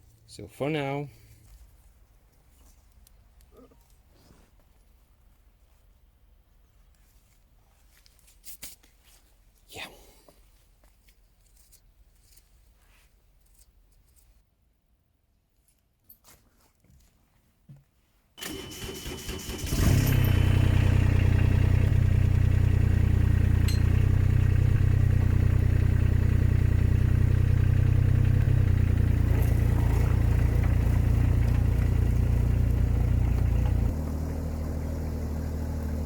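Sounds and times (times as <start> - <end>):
engine starter cranking: 18.4 - 22.0, 28.1 - 35.2
diesel engine running: 18.4 - 36.0.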